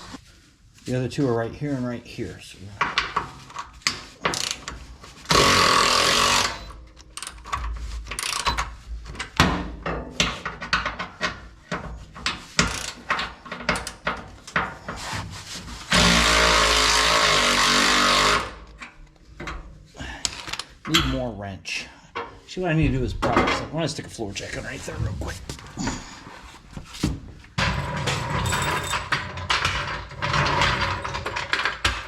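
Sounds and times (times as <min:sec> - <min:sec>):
tools clicking on metal: 0:28.3 - 0:29.2.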